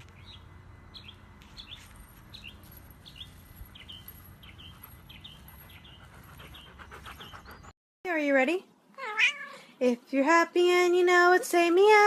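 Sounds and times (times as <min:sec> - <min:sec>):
small bird chirping: 0:00.0 - 0:07.7.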